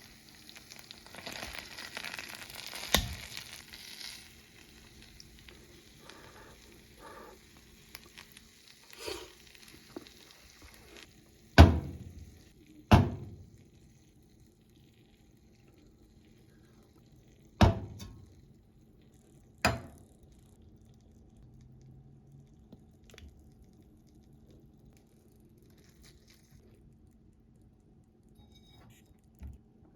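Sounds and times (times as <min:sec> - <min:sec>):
steak sizzling in pan: 0:00.0 - 0:18.5.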